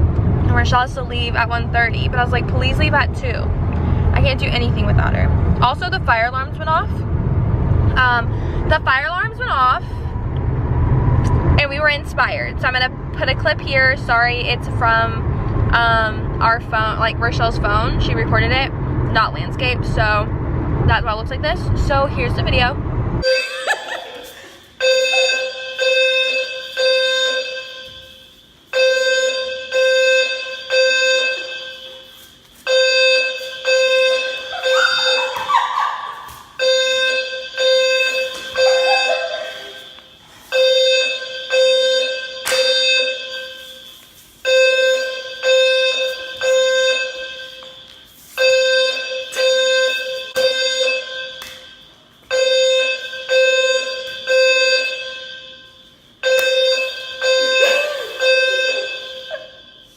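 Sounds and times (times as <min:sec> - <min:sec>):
fire alarm chime: 0:23.2 - 0:59.9.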